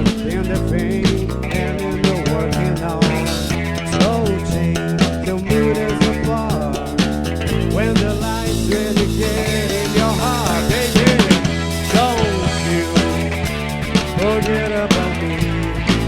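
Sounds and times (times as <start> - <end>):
rock band playing: 0.0 - 16.0.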